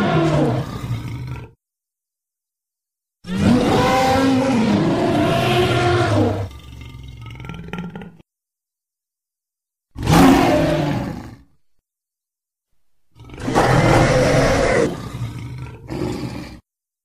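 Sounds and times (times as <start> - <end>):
monster roars: 0.0 - 1.5, 3.3 - 8.2, 10.0 - 11.4, 13.2 - 16.6.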